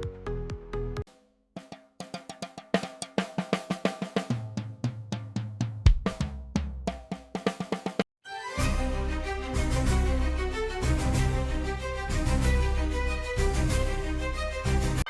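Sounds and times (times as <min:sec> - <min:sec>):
bass line: 0:00.0 - 0:01.0, 0:08.6 - 0:15.0
music with drum beat: 0:00.0 - 0:08.0.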